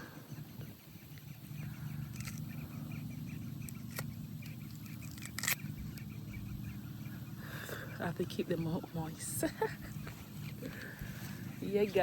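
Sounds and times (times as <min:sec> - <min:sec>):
faint chirping: 0:00.0 - 0:12.0
steady low hum: 0:00.0 - 0:12.0
sharp clicks: 0:03.6 - 0:06.1.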